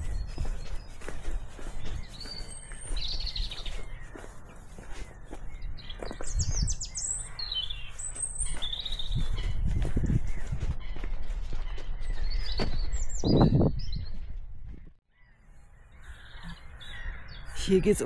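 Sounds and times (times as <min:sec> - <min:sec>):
small songbirds chirping: 0:00.0 - 0:18.0
dull thuds: 0:12.5 - 0:13.4.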